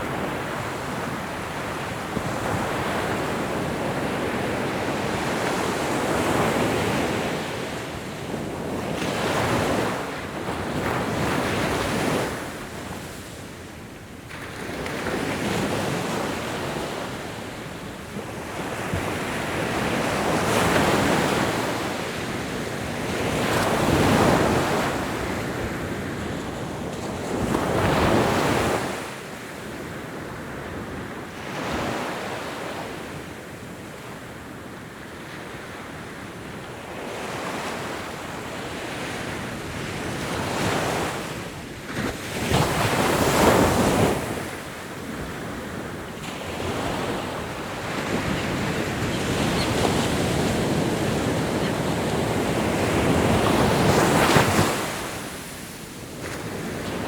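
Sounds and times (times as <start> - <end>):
ocean waves breaking on shore: 36.9 - 57.0.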